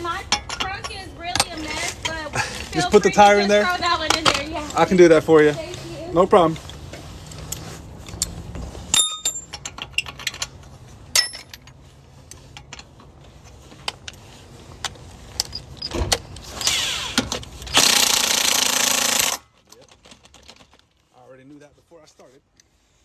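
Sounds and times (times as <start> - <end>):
metal tools clinking: 0.0 - 14.2
cordless impact wrench spinning: 16.4 - 19.4.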